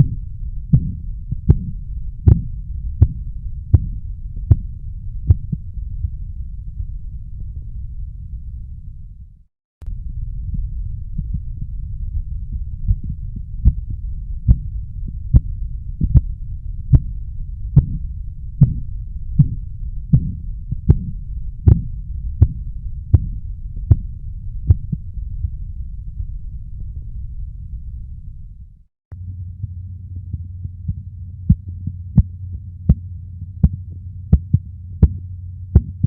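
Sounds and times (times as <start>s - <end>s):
low rumble: 0.0s - 36.0s
soft pulse taps through stethoscope: 0.7s - 3.2s, 21.7s - 22.6s, 30.9s - 35.2s, 35.8s - 36.0s.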